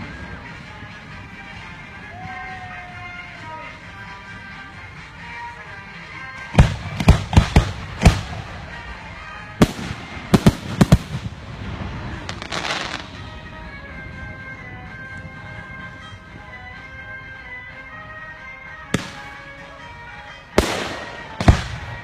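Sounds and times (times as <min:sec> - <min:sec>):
music: 0:00.0 - 0:22.0
fireworks crackling: 0:06.3 - 0:15.4, 0:20.5 - 0:22.0
fireworks bangs: 0:06.6 - 0:08.8, 0:09.6 - 0:13.3, 0:20.6 - 0:22.0.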